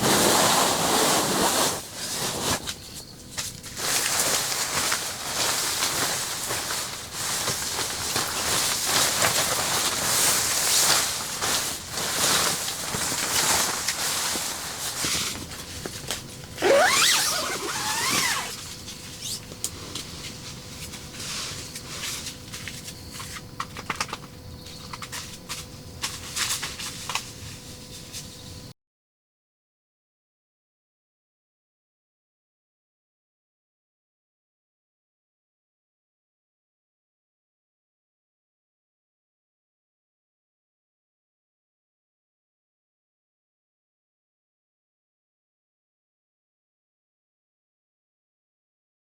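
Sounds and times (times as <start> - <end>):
rustling and crackling: 0.0 - 24.2.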